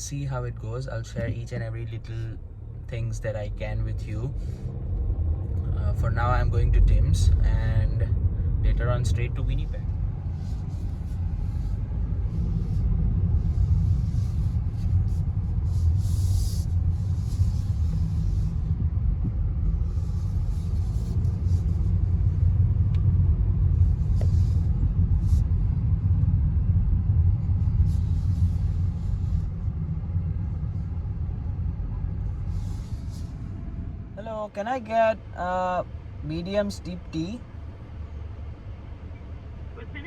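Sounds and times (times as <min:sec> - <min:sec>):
car road rumble inside cabin: 0:00.0 - 0:40.0
higher road hiss: 0:05.7 - 0:18.9, 0:19.6 - 0:26.1, 0:27.3 - 0:38.3, 0:38.9 - 0:40.0.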